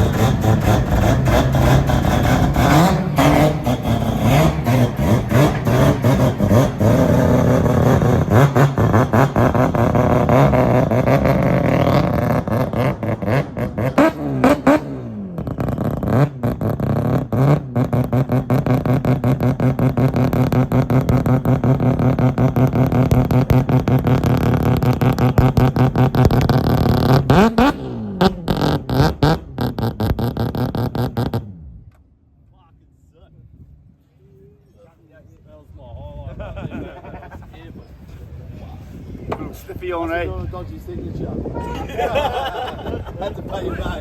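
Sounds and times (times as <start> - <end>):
car engine revving and idling: 0.0 - 31.9.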